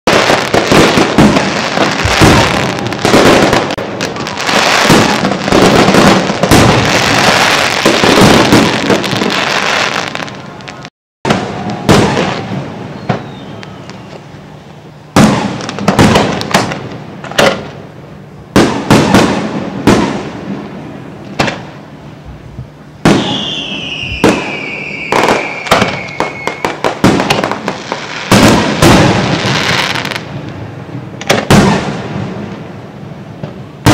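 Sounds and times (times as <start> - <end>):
fireworks shell bursts booming: 0.1 - 9.4, 23.0 - 30.2
falling whistle: 12.3 - 14.6, 23.2 - 26.8.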